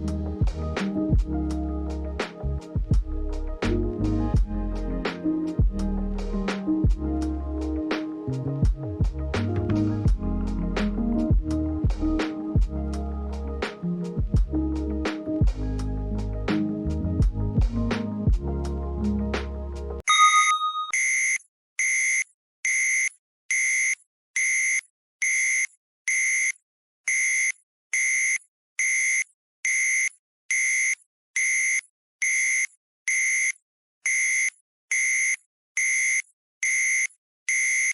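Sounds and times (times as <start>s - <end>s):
music: 0.0s - 20.1s
electronic timer beeps: 20.1s - 37.9s.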